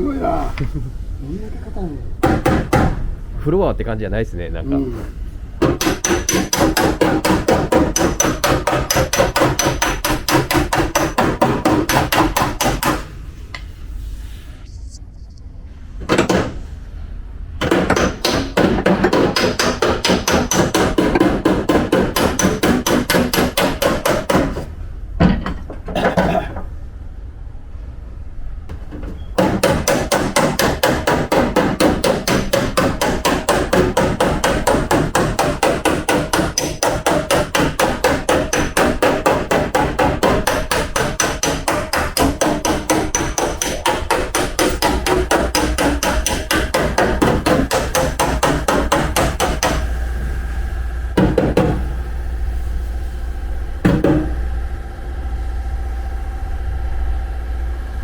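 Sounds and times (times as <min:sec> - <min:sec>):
hammer striking steel panel: 0:02.2 - 0:03.0, 0:05.6 - 0:13.1, 0:16.0 - 0:16.7, 0:17.6 - 0:24.7, 0:29.4 - 0:50.0, 0:51.2 - 0:51.9.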